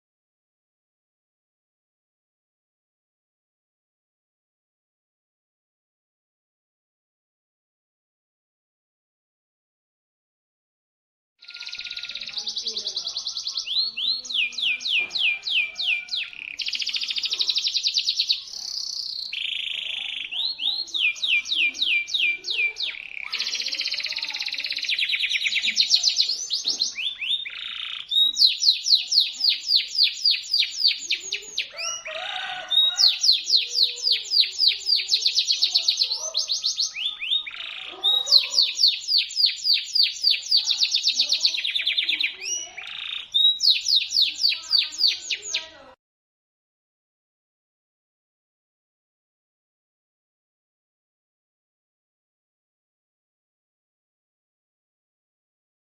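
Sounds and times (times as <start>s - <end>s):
canary singing trills: 11.4s - 45.9s.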